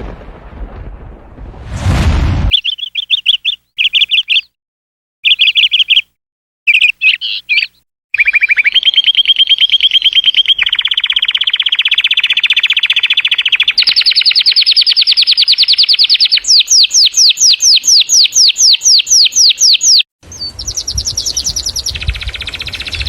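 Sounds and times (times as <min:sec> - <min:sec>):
canary singing: 0:02.5 - 0:04.6, 0:05.2 - 0:23.0
canary trilling: 0:06.7 - 0:23.0.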